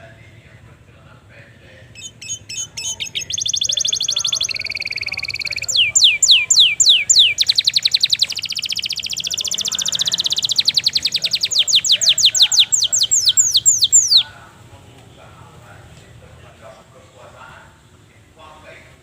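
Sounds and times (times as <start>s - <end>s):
canary singing: 1.9s - 14.4s.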